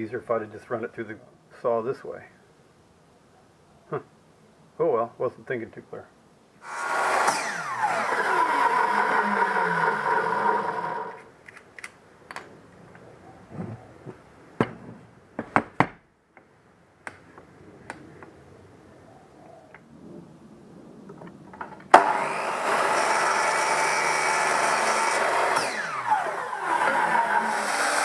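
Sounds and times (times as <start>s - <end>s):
power tool running: 6.6s - 11.3s, 21.9s - 28.0s.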